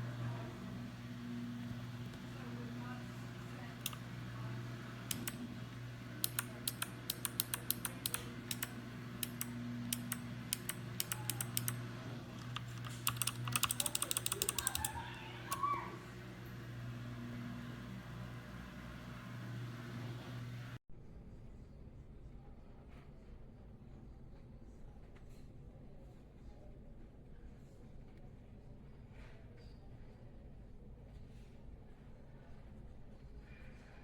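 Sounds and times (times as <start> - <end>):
steady low hum: 0.0 - 20.8
mechanical keyboard typing: 5.0 - 5.5, 6.2 - 15.6.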